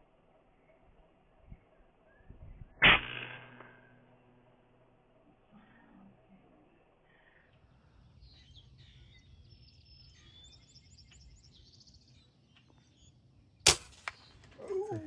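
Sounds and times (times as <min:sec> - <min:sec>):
small birds chirping: 0:05.2 - 0:15.0
air rifle shot crack: 0:13.6 - 0:14.5.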